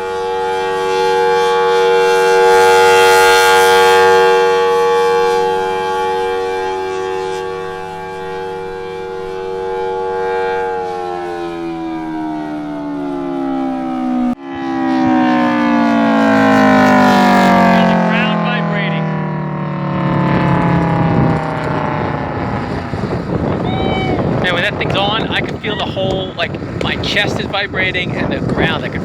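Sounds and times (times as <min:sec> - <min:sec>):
air raid siren: 0:00.0 - 0:29.0.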